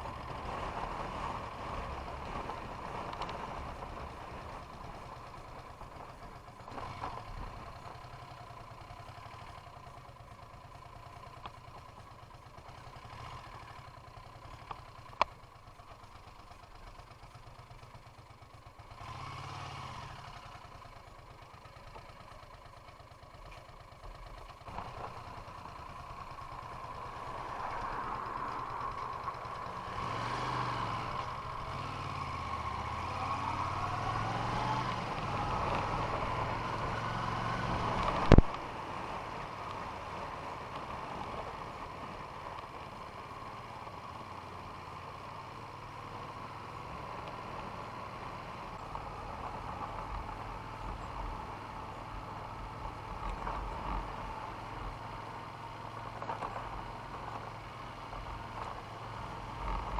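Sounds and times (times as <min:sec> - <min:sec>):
vehicle engine running: 0:00.0 - 0:59.9.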